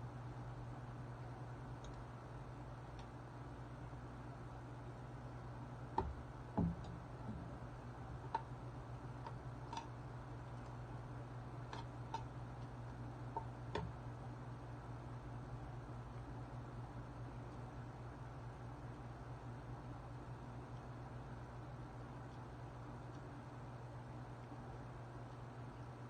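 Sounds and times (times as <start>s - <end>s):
steady low hum: 0.0s - 26.0s
dull knock: 6.0s - 7.5s.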